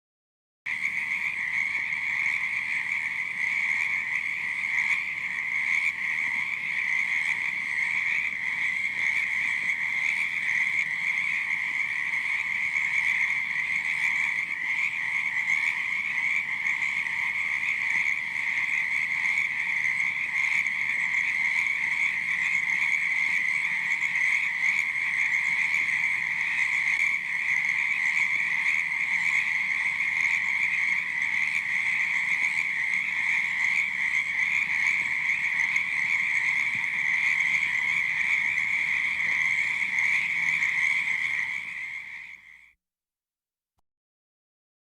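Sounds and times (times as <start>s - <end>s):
frogs croaking in chorus: 0.7s - 42.8s.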